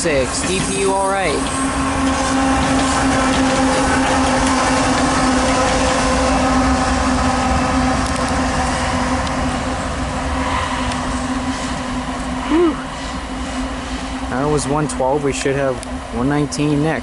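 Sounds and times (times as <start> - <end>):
freight train wheels rumbling: 0.0 - 17.0
steady droning tone: 3.7 - 15.1.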